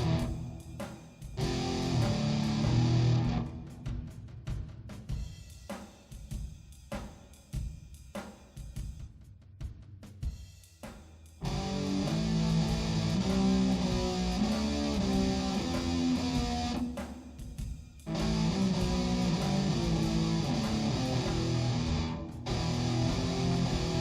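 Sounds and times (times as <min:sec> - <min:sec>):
guitar music: 0:00.0 - 0:00.4, 0:01.4 - 0:03.6, 0:11.4 - 0:16.8, 0:18.1 - 0:24.0.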